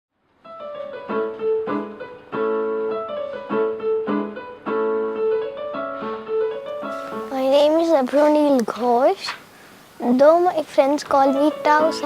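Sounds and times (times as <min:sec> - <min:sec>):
piano playing chords: 0:00.4 - 0:08.5, 0:11.1 - 0:12.0.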